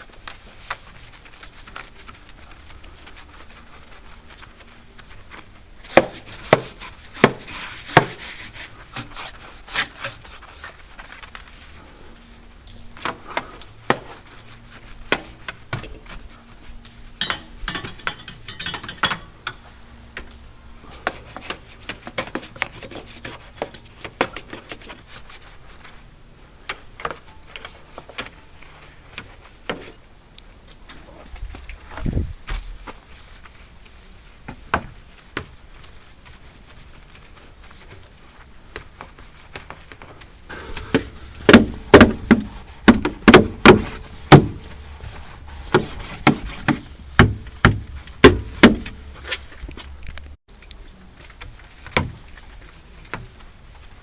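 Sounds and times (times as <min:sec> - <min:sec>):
tools being handled: 0:12.7 - 0:20.4.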